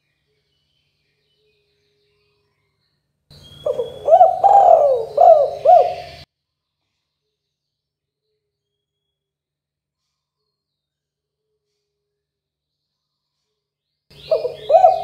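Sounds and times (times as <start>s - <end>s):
faint high bird chirps: 0.0s - 6.3s, 12.9s - 15.0s
dove cooing: 3.6s - 6.2s, 14.2s - 15.0s.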